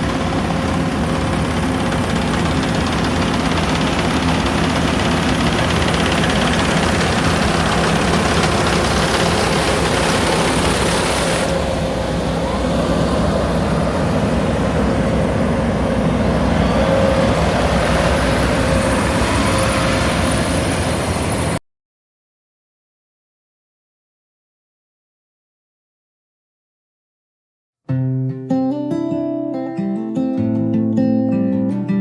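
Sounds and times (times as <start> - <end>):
harvester engine running: 0.0 - 21.6.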